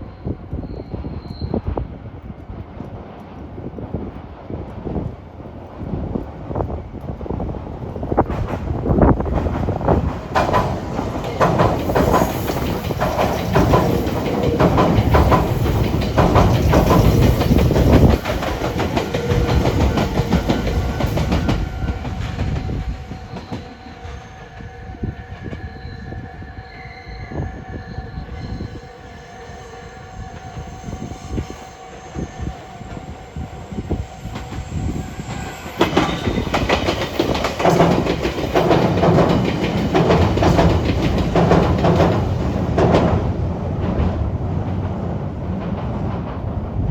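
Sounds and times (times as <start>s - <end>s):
steady train hum: 0.0s - 46.9s
train wheels clattering over rail joints: 8.0s - 23.8s, 33.8s - 46.5s.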